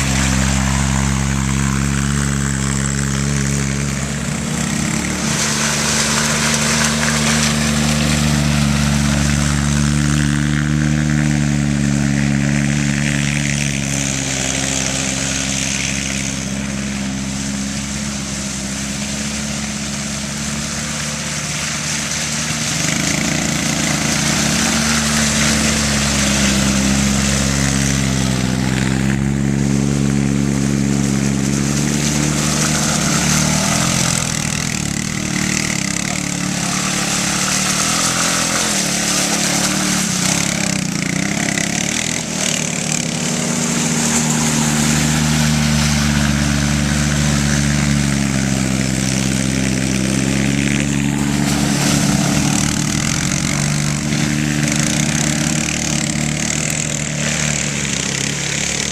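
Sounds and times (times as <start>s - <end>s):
atv engine changing speed: 0.0s - 58.9s.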